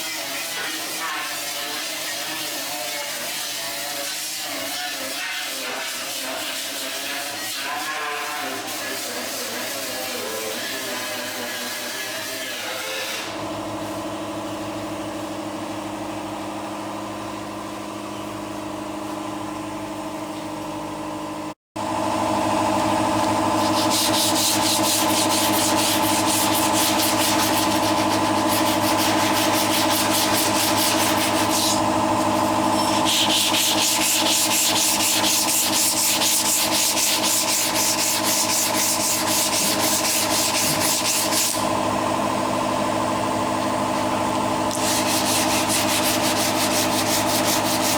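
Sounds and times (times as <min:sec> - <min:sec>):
power sander grinding metal panel: 0:00.0 - 0:13.4, 0:23.1 - 0:47.9.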